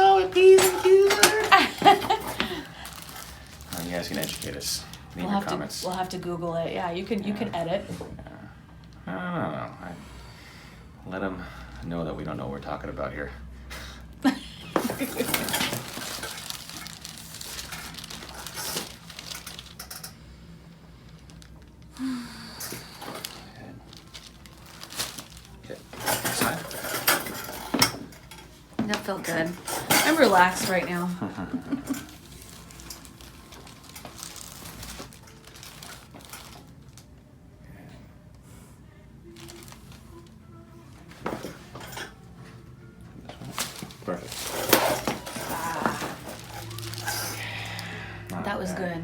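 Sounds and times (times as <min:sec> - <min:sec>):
rustling of clothing and hands: 0:00.0 - 0:06.4, 0:14.4 - 0:20.3, 0:21.0 - 0:37.0, 0:39.2 - 0:47.9
faint rustling: 0:22.7 - 0:31.2, 0:31.8 - 0:36.9.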